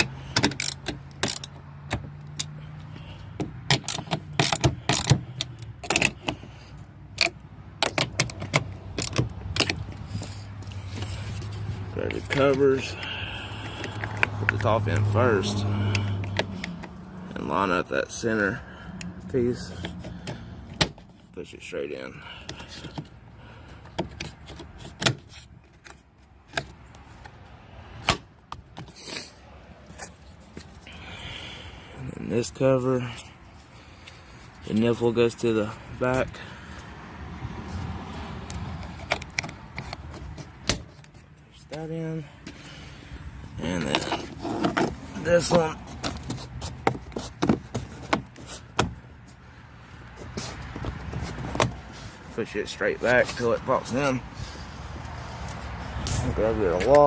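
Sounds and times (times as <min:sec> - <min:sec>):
socket wrench clicks and metal clinks: 0:00.4 - 0:02.6.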